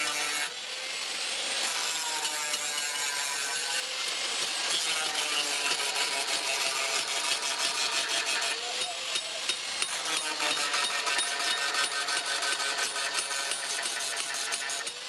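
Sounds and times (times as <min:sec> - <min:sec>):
tool rasping steel: 0:00.0 - 0:00.5, 0:01.5 - 0:15.0.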